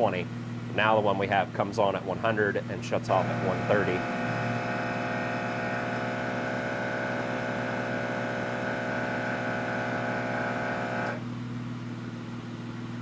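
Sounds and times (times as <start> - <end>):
air compressor running: 3.0 - 11.3.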